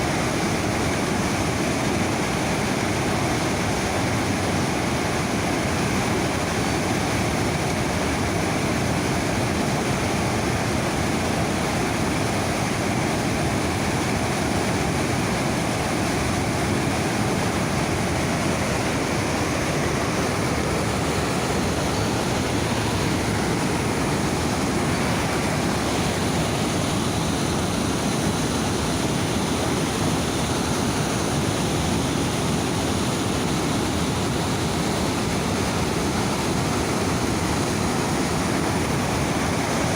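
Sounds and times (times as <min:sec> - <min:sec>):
river rapids roaring: 0:00.0 - 0:39.9.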